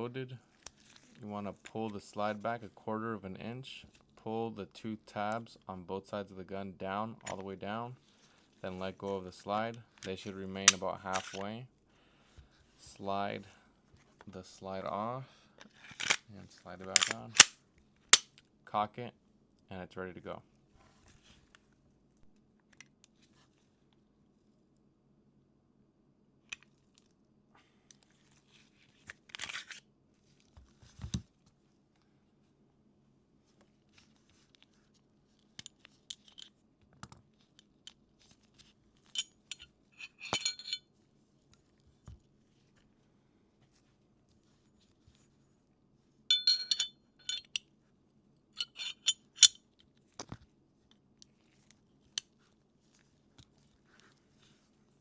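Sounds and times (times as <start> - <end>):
pistol clicks: 10.7 - 11.3, 16.0 - 16.2, 16.9 - 17.6.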